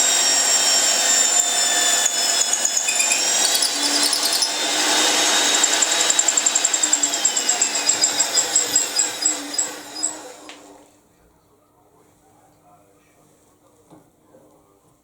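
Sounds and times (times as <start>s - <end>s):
drill motor whining and winding down: 0.0s - 10.9s.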